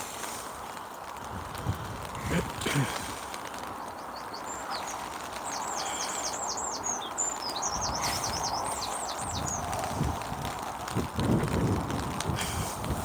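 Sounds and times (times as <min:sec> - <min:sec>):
rain falling: 0:00.0 - 0:13.0
songbird singing: 0:02.7 - 0:10.3.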